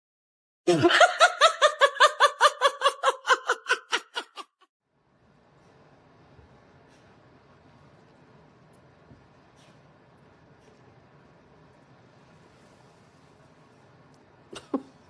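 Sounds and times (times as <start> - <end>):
high-pitched laugh: 0.7 - 4.7.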